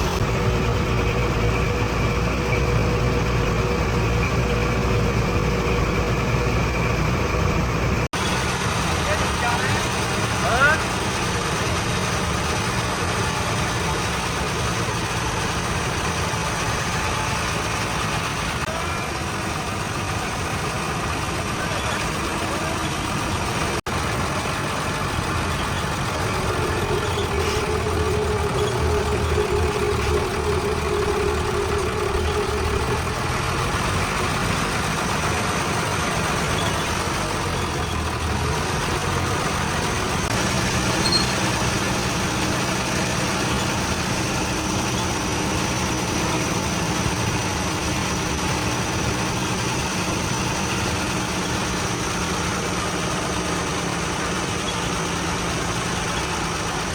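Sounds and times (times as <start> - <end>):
diesel engine running: 0.0 - 56.9
high-pitched whine: 26.2 - 37.8.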